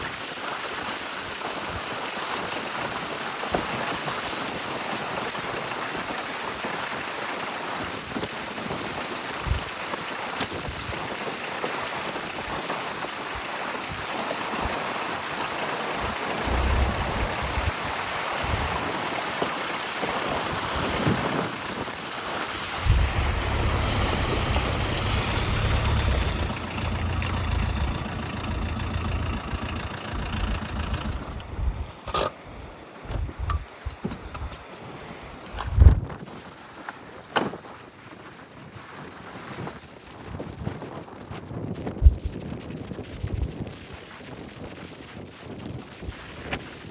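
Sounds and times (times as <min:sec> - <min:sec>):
rushing water: 0:14.1 - 0:31.6
heavy low rumble: 0:16.0 - 0:17.9, 0:22.6 - 0:31.9.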